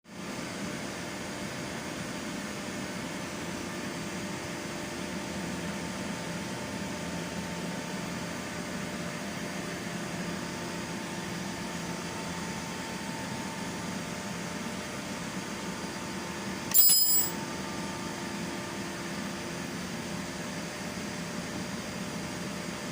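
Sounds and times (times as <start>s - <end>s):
mechanical hum with hiss: 0.1s - 22.9s
short high-pitched ring: 16.7s - 17.4s.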